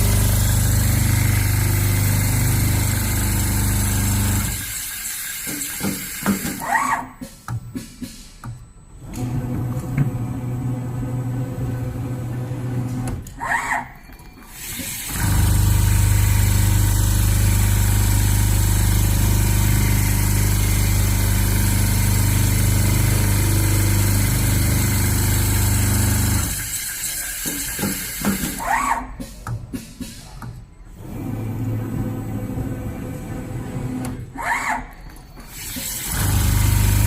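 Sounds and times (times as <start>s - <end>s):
sewing machine humming: 0.0s - 6.7s, 14.6s - 28.4s, 35.8s - 37.0s.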